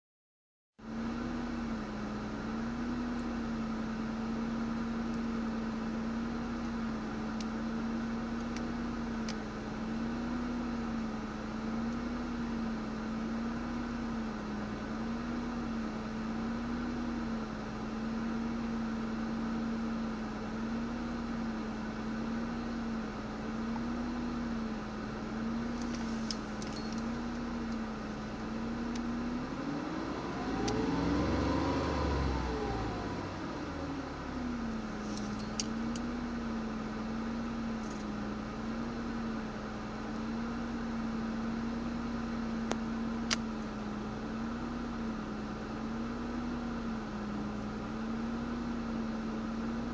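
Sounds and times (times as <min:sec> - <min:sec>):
car engine idling roughly: 0:25.0 - 0:28.8.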